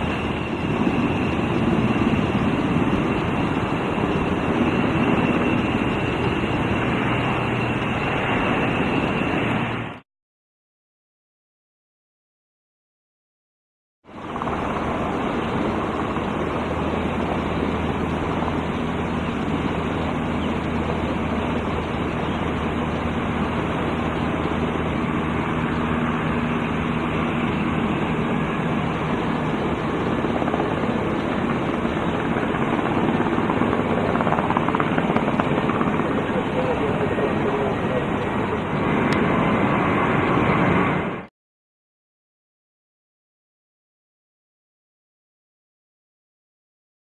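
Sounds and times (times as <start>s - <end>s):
helicopter turbine and rotor noise: 0.0s - 10.0s, 14.0s - 41.3s.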